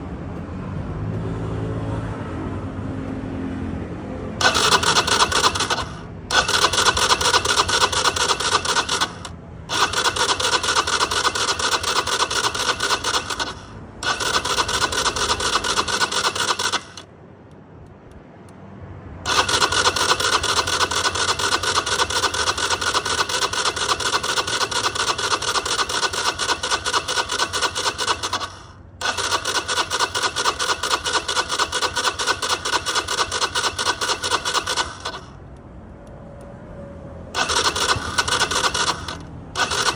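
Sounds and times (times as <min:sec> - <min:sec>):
starter motor cranking engine: 0:04.4 - 0:17.1, 0:19.2 - 0:35.4, 0:37.3 - 0:39.9.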